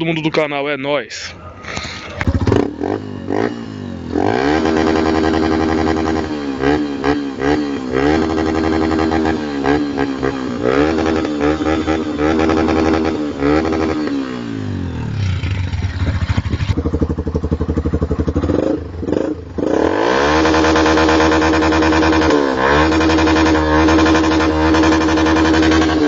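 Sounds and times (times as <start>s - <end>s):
motorcycle engine revving: 1.9s - 26.0s.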